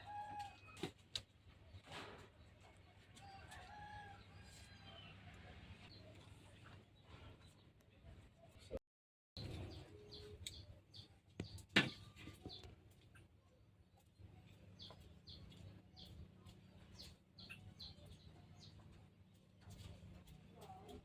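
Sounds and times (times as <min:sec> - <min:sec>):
small birds chirping: 0:09.4 - 0:21.0.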